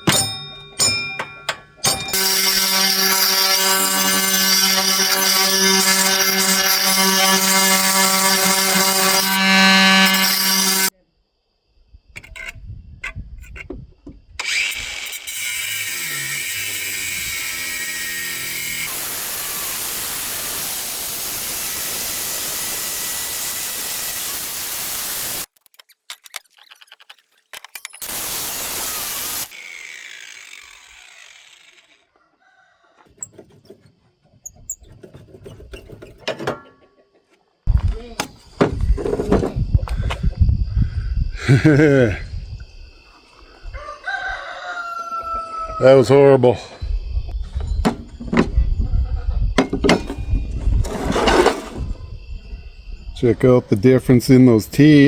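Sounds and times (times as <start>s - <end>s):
grinder grinding metal: 1.8s - 10.9s, 14.4s - 25.5s, 27.8s - 32.1s
grinder spinning down: 2.1s - 10.9s, 14.4s - 25.5s, 27.9s - 32.1s.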